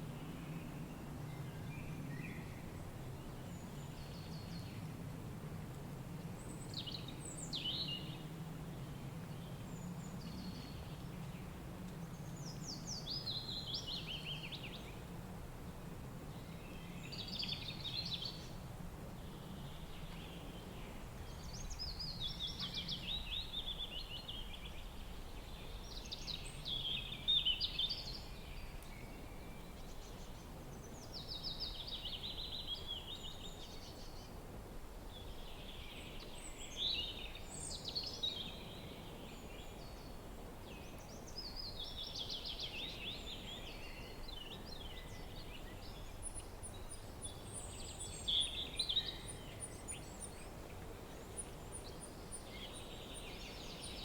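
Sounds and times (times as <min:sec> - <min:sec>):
low rush of wind: 0:00.0 - 0:54.0
songbird singing: 0:06.4 - 0:15.0, 0:16.3 - 0:18.6, 0:19.2 - 0:34.4, 0:35.1 - 0:54.0.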